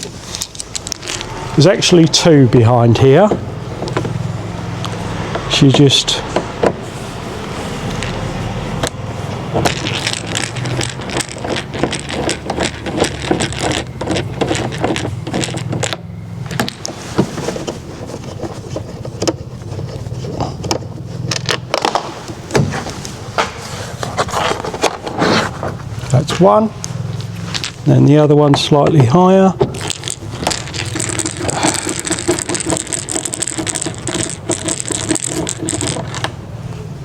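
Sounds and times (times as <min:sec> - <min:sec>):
screwdriver clicking and scraping: 0:09.6 - 0:22.3, 0:29.8 - 0:36.3.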